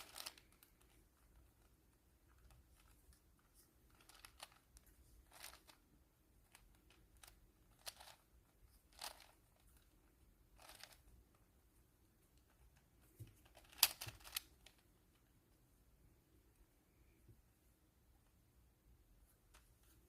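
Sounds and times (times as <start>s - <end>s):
puzzle cube clicking: 0.0s - 1.0s, 13.5s - 14.7s.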